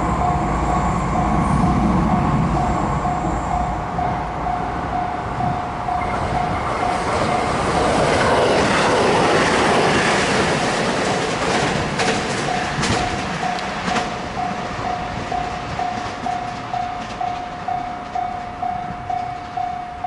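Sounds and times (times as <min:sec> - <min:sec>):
crossing warning bell ringing: 0:00.0 - 0:08.8, 0:12.0 - 0:20.0
train wheel noise: 0:00.0 - 0:20.0.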